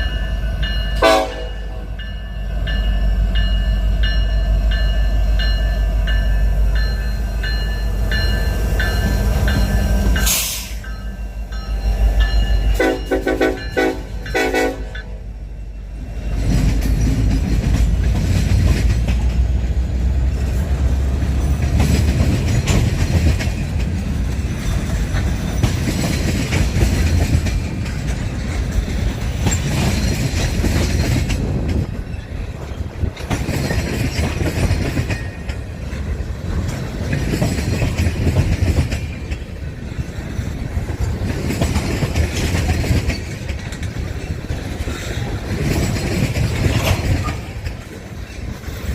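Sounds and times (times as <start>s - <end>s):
train wheels on rails: 0.0s - 48.9s
locomotive air horn blasts: 1.0s - 1.9s, 12.7s - 15.1s.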